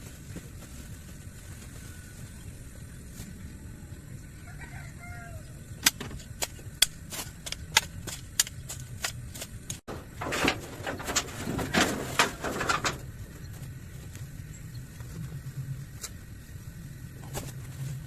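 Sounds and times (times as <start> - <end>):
brush rustling and swishing: 0.0 - 3.4.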